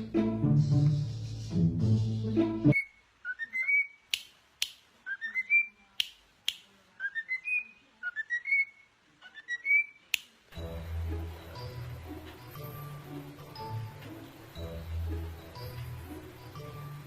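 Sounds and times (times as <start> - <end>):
bird whistling: 2.7 - 4.0, 5.1 - 5.8, 7.0 - 10.0.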